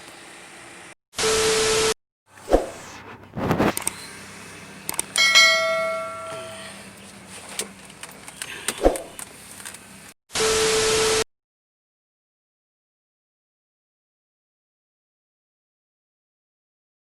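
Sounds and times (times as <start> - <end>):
metal tools knocking: 5.2 - 6.6
struck metal ringing: 5.2 - 6.8.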